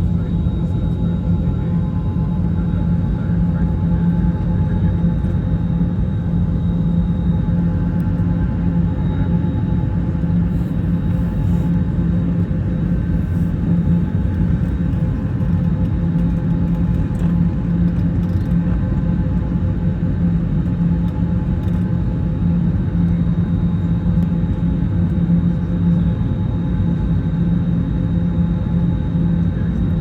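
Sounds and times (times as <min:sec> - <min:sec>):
airliner cabin engine drone: 0:00.0 - 0:30.0.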